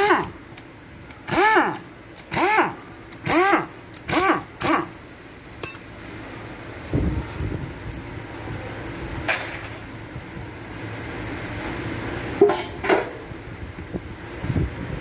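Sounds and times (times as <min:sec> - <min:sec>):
steady background hum: 0:00.0 - 0:15.0
metal tools clinking: 0:05.6 - 0:05.9, 0:09.3 - 0:09.9.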